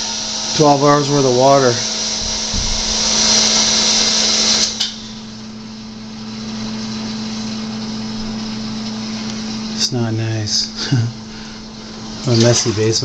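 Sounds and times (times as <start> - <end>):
electric pump humming: 0.0 - 13.0.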